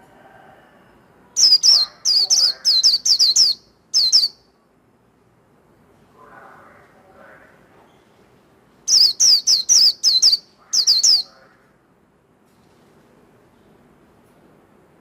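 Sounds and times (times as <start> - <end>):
bird singing high whistled notes: 1.4 - 4.4, 8.9 - 11.3.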